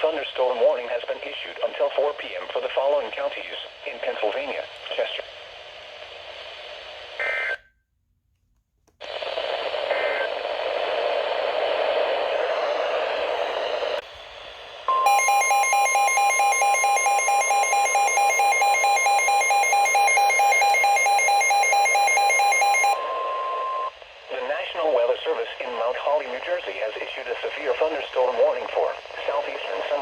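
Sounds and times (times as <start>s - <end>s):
radio hiss: 0.0s - 7.6s, 9.0s - 15.0s, 22.8s - 30.0s
data tone chirp: 14.9s - 23.9s
rapid electronic beeping: 14.9s - 23.9s
weather radio alarm tone: 14.9s - 24.0s.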